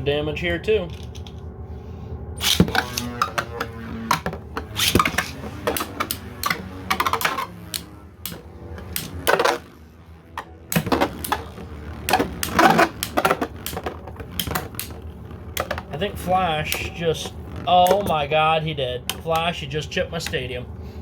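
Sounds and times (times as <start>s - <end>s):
spinning tops clacking: 2.4s - 18.2s.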